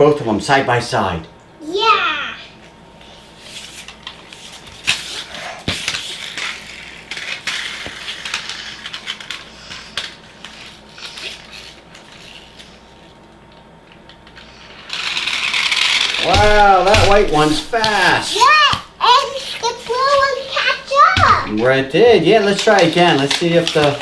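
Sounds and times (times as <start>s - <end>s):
toy cars whirring: 3.6s - 13.0s, 14.3s - 21.5s.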